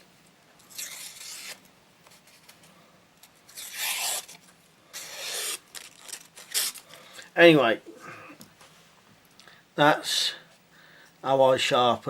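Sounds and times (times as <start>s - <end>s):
knife blade slicing paper: 0.7s - 1.6s, 3.5s - 4.4s, 5.0s - 6.8s.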